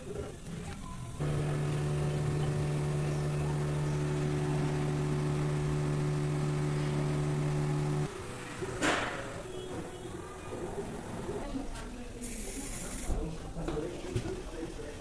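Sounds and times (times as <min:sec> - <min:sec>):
motor running steadily: 0:01.2 - 0:09.6.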